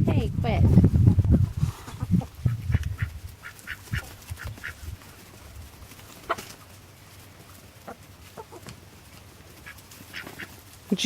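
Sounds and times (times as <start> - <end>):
poultry calling: 1.8 - 5.3, 5.9 - 6.8, 7.4 - 10.8.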